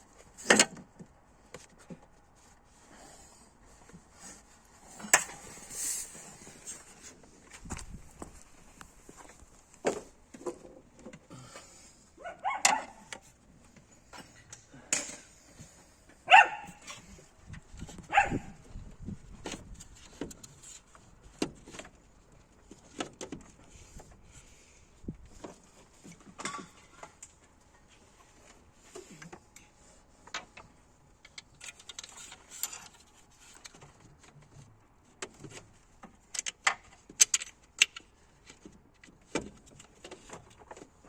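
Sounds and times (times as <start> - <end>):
dog barking: 12.2 - 13.1, 16.3 - 16.8, 18.1 - 18.6.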